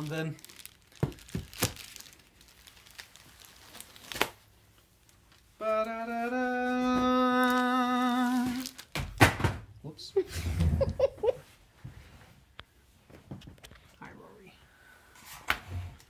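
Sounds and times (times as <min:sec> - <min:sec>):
packaging rustling and clicking: 0:00.0 - 0:04.4
person singing a held note: 0:05.6 - 0:08.8.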